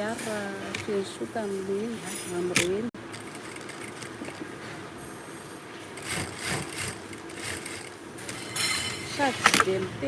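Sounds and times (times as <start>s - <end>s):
sewing machine running: 3.0s - 4.5s, 6.0s - 8.0s.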